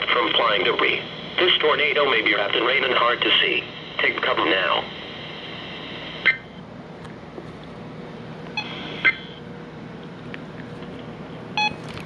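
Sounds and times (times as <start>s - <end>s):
radio static: 0.0s - 6.3s.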